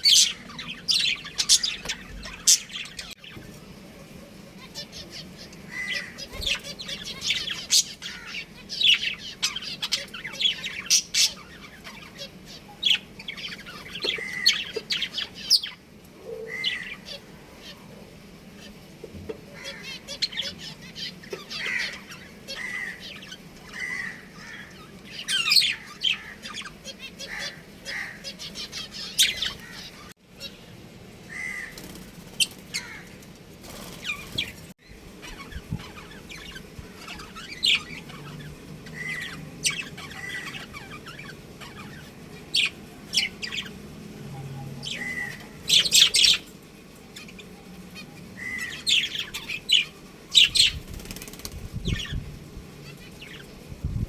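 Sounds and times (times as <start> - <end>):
budgerigars chirping: 0.0 - 3.3, 4.7 - 15.8, 19.6 - 30.6, 35.2 - 43.8, 44.8 - 46.6, 47.2 - 52.2.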